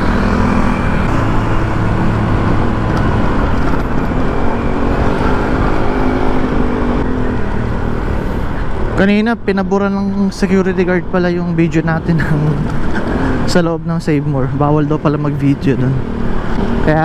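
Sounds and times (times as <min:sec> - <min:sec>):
scooter engine running: 0:00.0 - 0:09.0.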